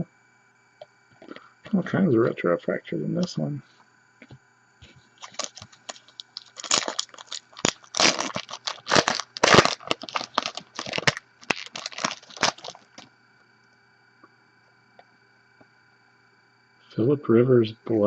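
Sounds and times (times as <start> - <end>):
foil wrapper tearing and crinkling: 5.2 - 13.0.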